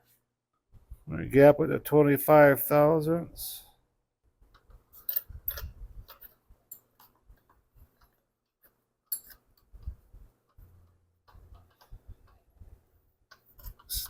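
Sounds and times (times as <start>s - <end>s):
small metallic clicks and taps: 11.2s - 12.5s, 13.3s - 14.0s.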